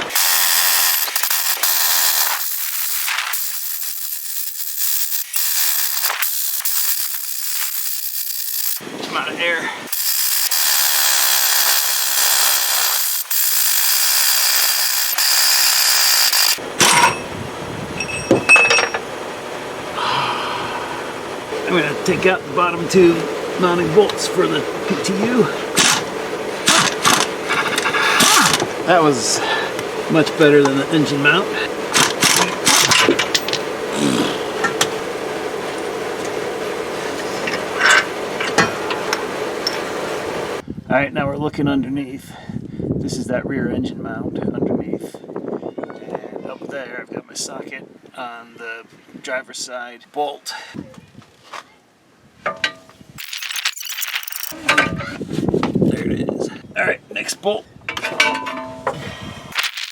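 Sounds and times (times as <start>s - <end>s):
compressed air hissing: 0.0s - 8.8s, 9.8s - 16.6s
short rasping burst: 0.0s - 8.8s, 9.8s - 16.6s
steady hum: 0.0s - 40.6s
metallic tool clicks and scrapes: 0.2s - 8.8s, 53.2s - 54.6s.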